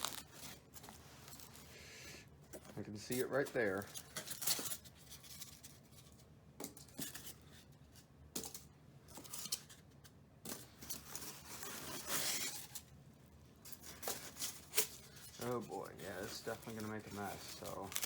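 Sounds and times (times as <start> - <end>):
styrofoam scraping in cardboard box: 11.1 - 12.8, 14.1 - 18.0.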